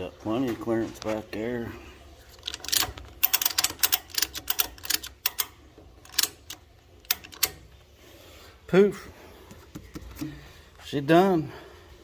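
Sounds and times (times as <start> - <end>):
metal hardware clicking: 2.3 - 7.8.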